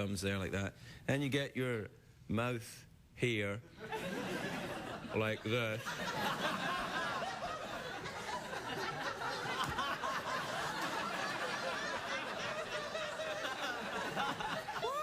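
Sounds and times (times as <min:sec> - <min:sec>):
audience laughing: 0:03.8 - 0:15.0.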